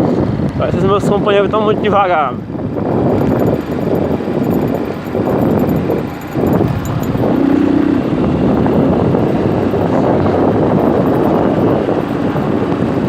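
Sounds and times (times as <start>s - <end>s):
wind rush on microphone: 0.0s - 13.0s
motorcycle engine running: 2.4s - 13.0s
short humming note: 5.4s - 10.1s.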